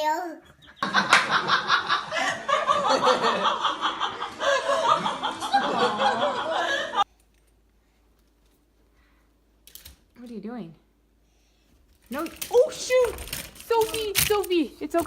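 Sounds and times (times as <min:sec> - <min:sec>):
people laughing: 0:00.7 - 0:07.1.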